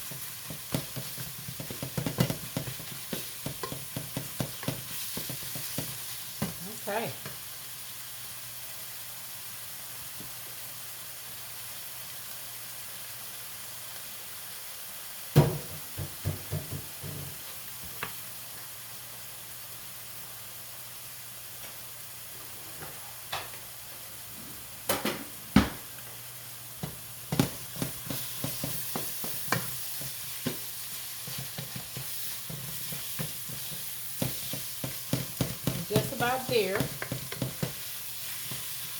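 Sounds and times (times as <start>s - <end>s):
meat sizzling in a skillet: 0.0s - 22.4s, 25.9s - 38.9s.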